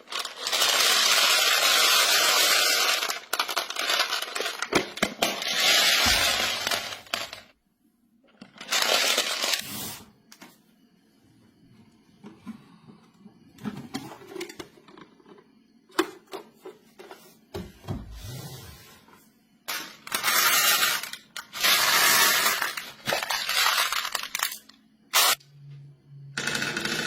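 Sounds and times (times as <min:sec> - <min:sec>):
marbles clicking on plastic track: 0:00.0 - 0:07.5, 0:26.4 - 0:27.0
marbles rattling and rolling: 0:00.0 - 0:07.5, 0:08.6 - 0:09.6, 0:19.7 - 0:24.6, 0:26.4 - 0:27.0.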